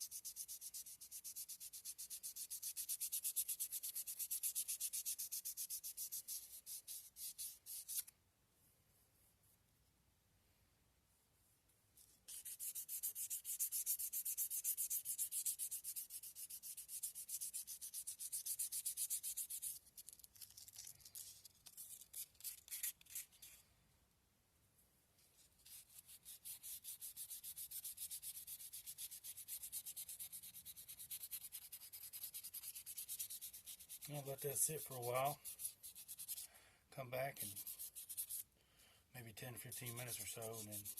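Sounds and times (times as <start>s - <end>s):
sandpaper rubbing on wood: 0.0s - 8.1s, 12.3s - 21.3s, 25.7s - 36.5s, 37.3s - 38.4s, 39.6s - 40.9s.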